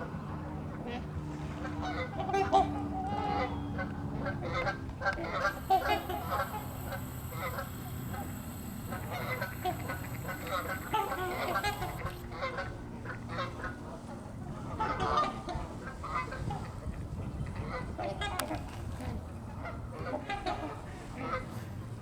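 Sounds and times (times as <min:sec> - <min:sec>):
waterfowl honking: 0:05.4 - 0:12.2.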